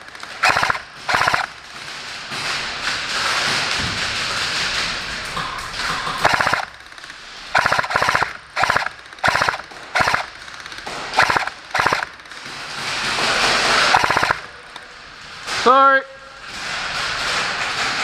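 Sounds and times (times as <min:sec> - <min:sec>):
airsoft guns firing bursts: 0:00.0 - 0:04.9, 0:06.0 - 0:14.8.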